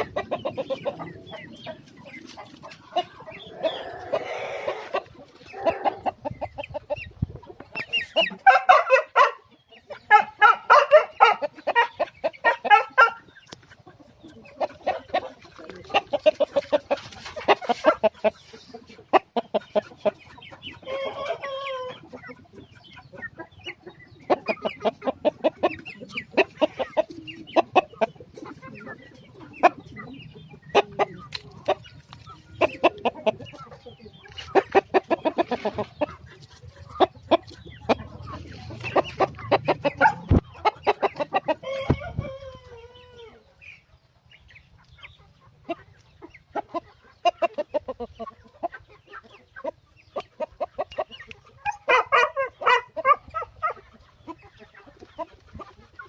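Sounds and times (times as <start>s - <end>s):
chickens clucking: 0.0s - 56.0s.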